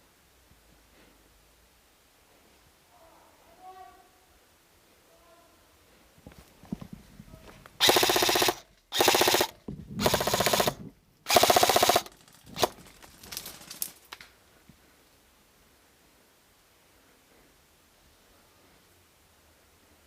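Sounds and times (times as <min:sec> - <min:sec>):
airsoft rifle rapid bursts: 0:07.8 - 0:12.8.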